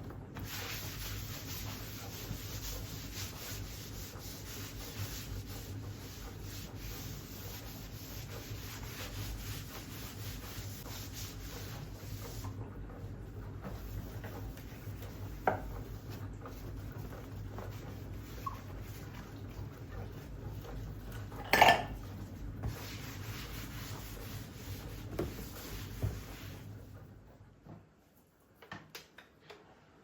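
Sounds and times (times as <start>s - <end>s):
scrubbing a hard surface: 0.4s - 26.9s.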